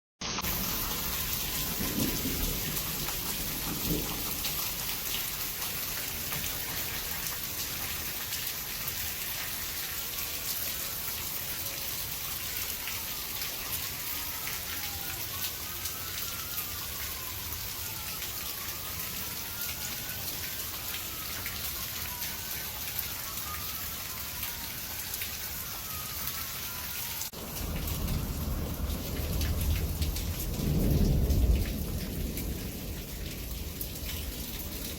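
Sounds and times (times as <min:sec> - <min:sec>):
heavy rain pouring: 0:00.2 - 0:34.9
thunder rumbling: 0:00.4 - 0:09.2, 0:27.4 - 0:34.9.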